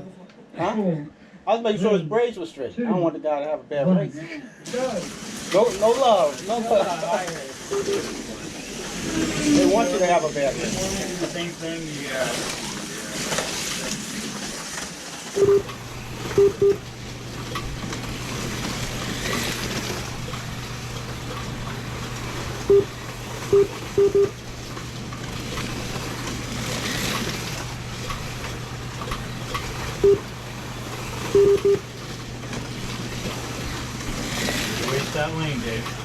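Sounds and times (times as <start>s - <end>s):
short electronic beeps: 7.7s - 8.1s, 15.4s - 15.7s, 16.4s - 16.8s, 22.7s - 22.9s, 23.5s - 24.4s, 30.0s - 30.2s, 31.3s - 31.9s.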